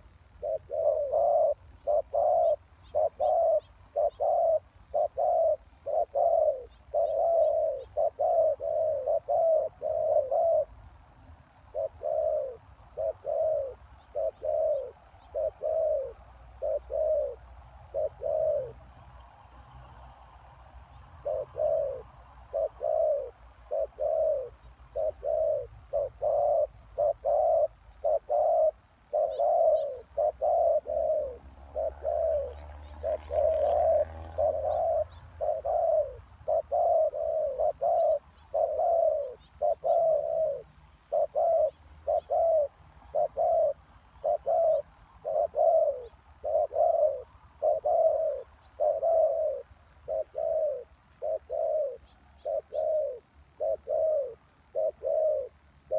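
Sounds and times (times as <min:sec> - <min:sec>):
dove cooing: 0:00.0 - 0:19.4, 0:21.0 - 0:55.9.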